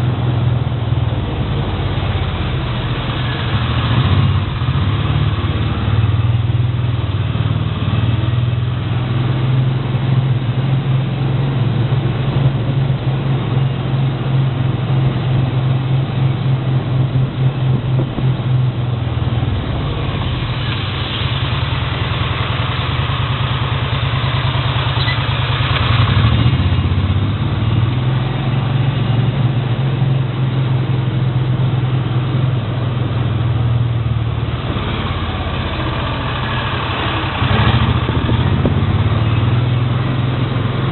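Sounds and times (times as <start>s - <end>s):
engine humming: 0.0s - 40.9s
hiss: 20.0s - 26.4s.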